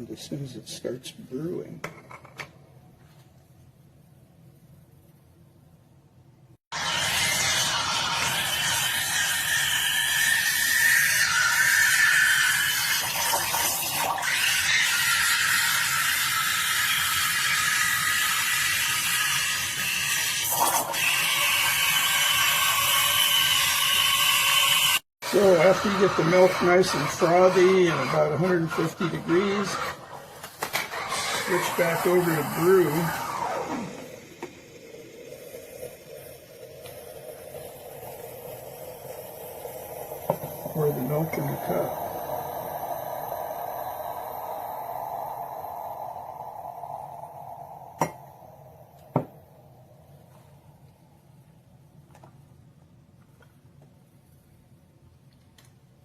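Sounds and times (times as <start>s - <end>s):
steam wand hissing: 6.7s - 50.0s.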